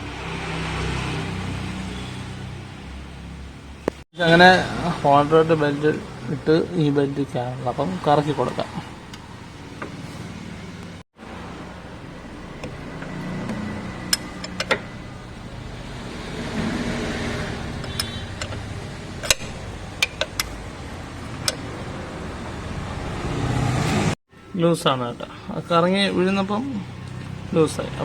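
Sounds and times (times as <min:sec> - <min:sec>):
metallic clicks and taps: 0:17.8 - 0:18.6, 0:19.2 - 0:20.6, 0:21.3 - 0:21.7.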